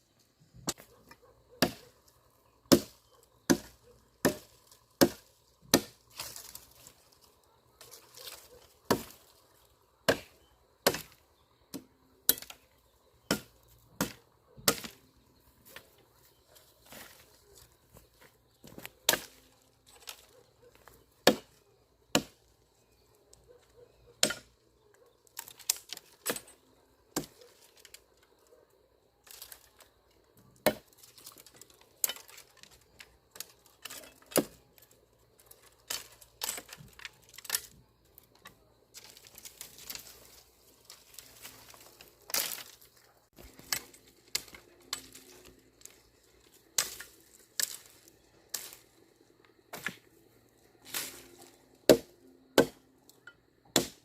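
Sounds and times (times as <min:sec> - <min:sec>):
sharp snaps and knocks: 0:46.7 - 0:48.8.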